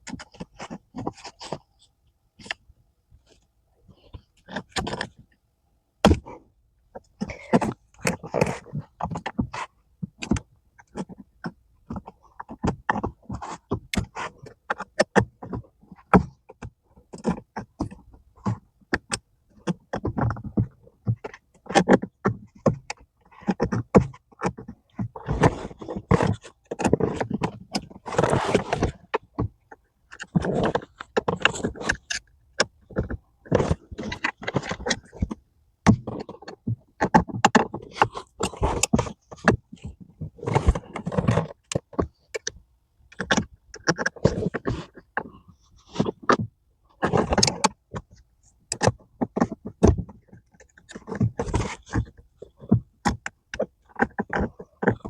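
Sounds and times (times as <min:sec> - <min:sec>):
scraping and rubbing on pedal: 0:23.3 - 0:29.4, 0:30.1 - 0:35.3, 0:50.7 - 0:52.9.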